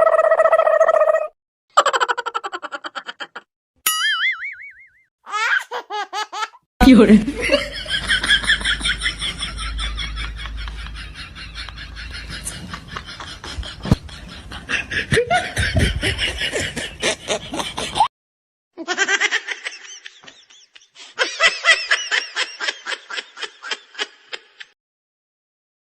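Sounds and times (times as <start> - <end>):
person laughing: 5.8 - 18.1.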